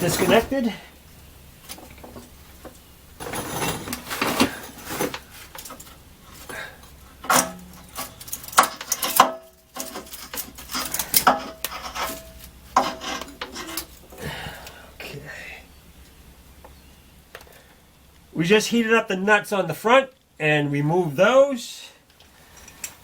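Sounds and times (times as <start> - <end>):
metal tools scraping and clinking: 0.0 - 0.8, 1.6 - 14.2
short metallic rings: 3.2 - 14.1.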